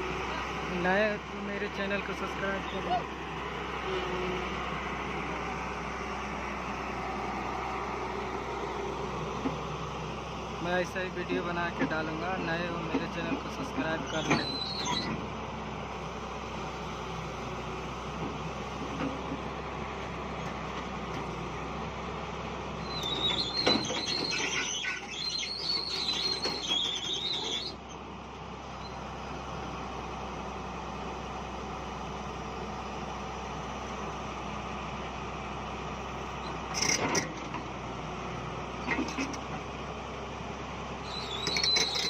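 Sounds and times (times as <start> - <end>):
diesel engine running: 0.0 - 42.0
high-pitched metallic squealing: 22.8 - 27.8, 41.0 - 42.0.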